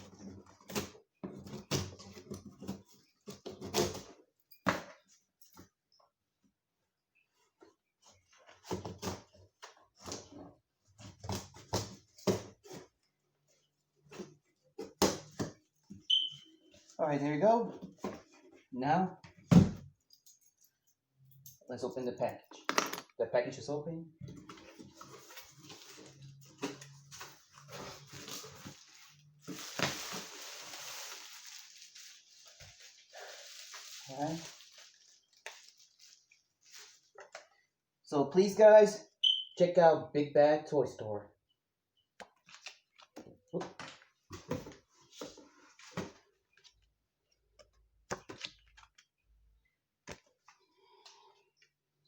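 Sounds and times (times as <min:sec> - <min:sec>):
packing material rustling: 0:24.8 - 0:37.2.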